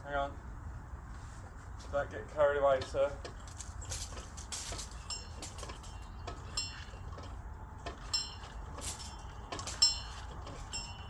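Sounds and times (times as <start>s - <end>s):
high metallic rings: 3.3s - 11.0s.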